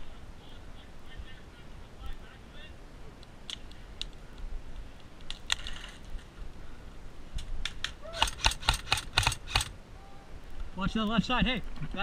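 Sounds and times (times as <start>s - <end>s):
airsoft guns firing: 8.1s - 9.8s.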